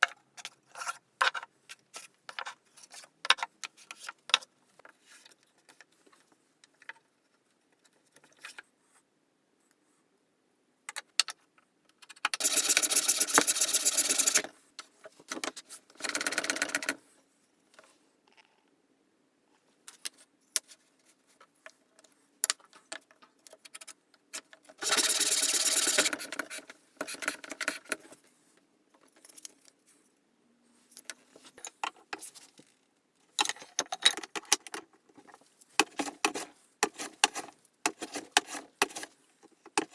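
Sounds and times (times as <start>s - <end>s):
tool working wood: 12.4s - 14.5s, 24.8s - 26.2s.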